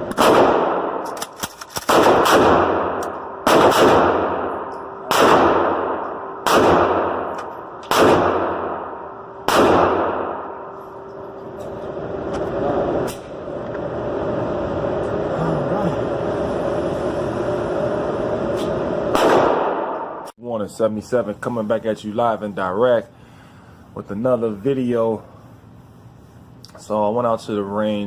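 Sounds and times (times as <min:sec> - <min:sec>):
rifle shots with echo: 0:00.0 - 0:10.8, 0:19.1 - 0:20.3.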